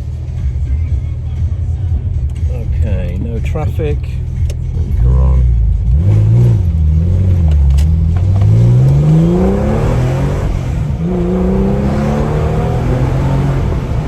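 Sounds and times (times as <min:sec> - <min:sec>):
car engine accelerating through gears: 0:04.3 - 0:14.0.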